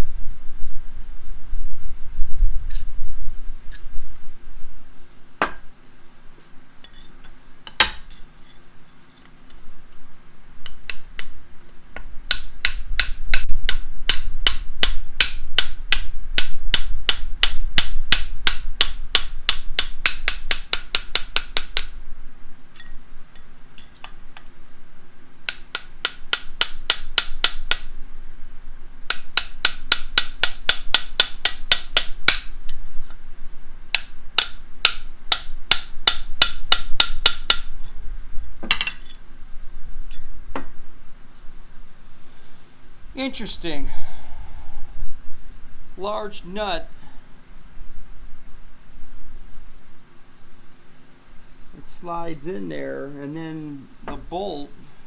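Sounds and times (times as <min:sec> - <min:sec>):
hammer striking metal: 0:05.4 - 0:05.7, 0:29.1 - 0:32.5, 0:33.9 - 0:37.7.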